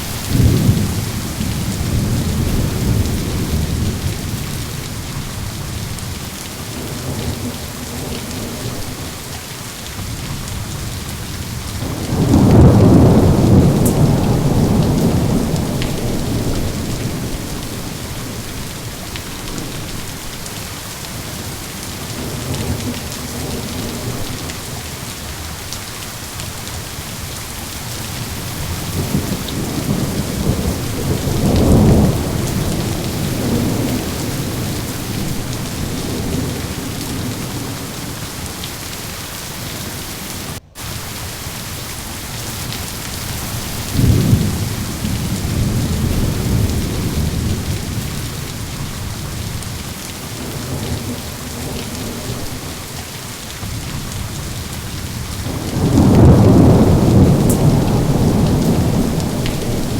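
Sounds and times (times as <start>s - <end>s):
thunder rumbling: 0.0s - 9.2s, 10.0s - 20.3s, 27.8s - 38.8s, 42.2s - 59.9s
steady rain falling: 0.0s - 59.9s.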